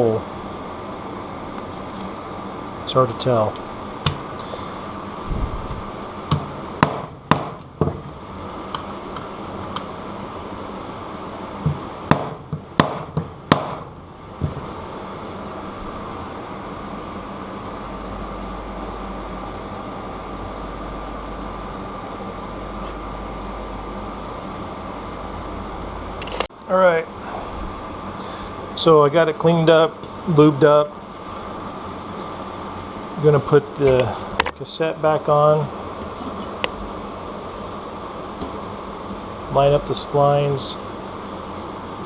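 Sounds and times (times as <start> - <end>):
steady background hum: 0.0 - 42.0
low rumble: 5.1 - 6.6.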